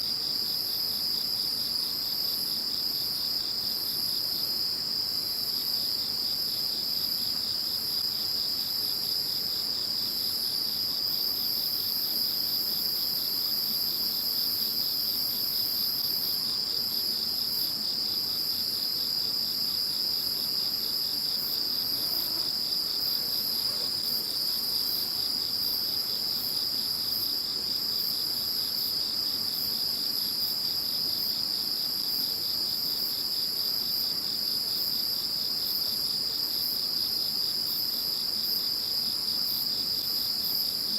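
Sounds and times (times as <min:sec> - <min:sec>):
very high pulsed insect chirp: 0:00.0 - 0:40.9
insects trilling: 0:17.5 - 0:28.2.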